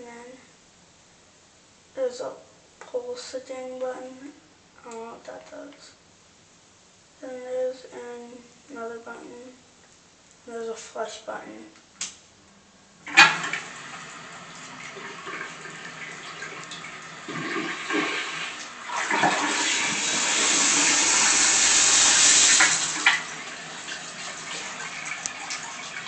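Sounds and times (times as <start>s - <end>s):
toilet flushing water rushing: 13.0s - 26.0s
toilet click: 13.1s - 13.6s.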